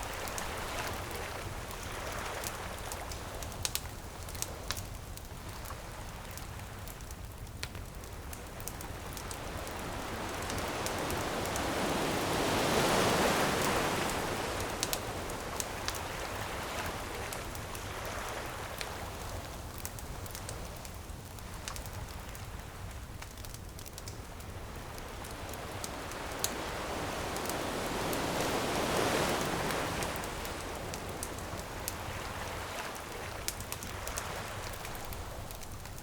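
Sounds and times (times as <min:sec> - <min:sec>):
bonfire crackling and popping: 0:00.0 - 0:36.0
ocean wave washing in and out: 0:08.8 - 0:19.6, 0:24.5 - 0:35.5.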